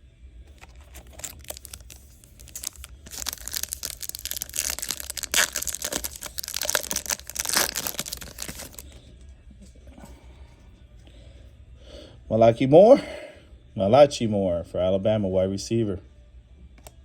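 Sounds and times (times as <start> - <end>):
packaging being crumpled: 0.5 - 9.0.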